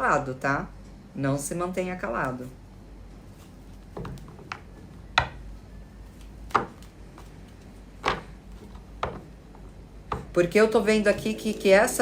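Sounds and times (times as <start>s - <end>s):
taps on a tabletop: 10.1s - 10.4s.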